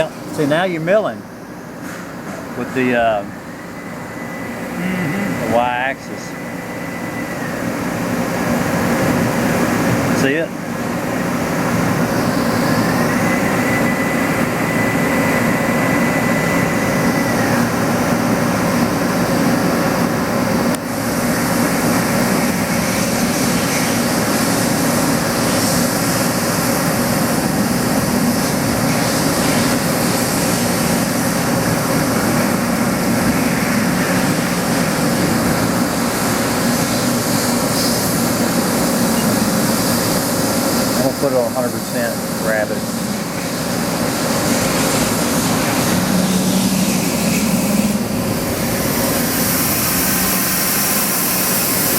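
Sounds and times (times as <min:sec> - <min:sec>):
thin high whine: 0:00.0 - 0:51.9
machining drone: 0:02.6 - 0:51.9.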